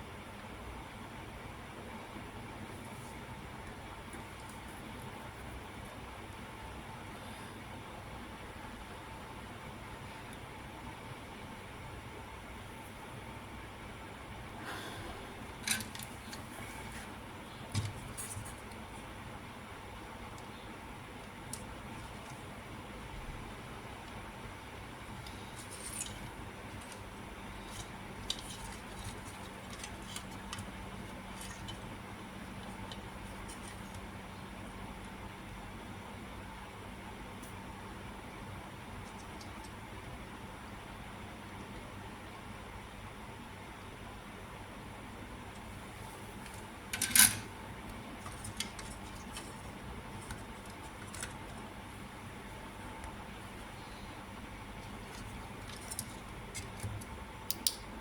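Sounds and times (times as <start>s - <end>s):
faint hum: 0.0s - 58.0s.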